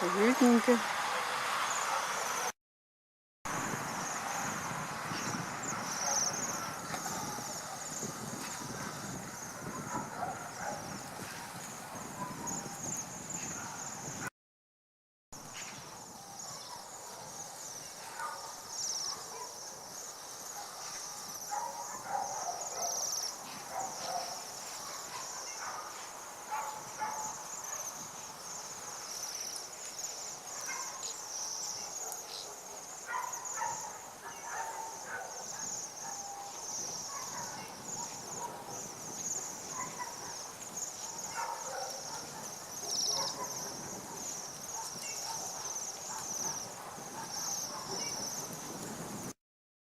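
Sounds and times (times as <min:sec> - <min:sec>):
songbirds twittering: 0:03.6 - 0:14.2, 0:15.5 - 0:48.7.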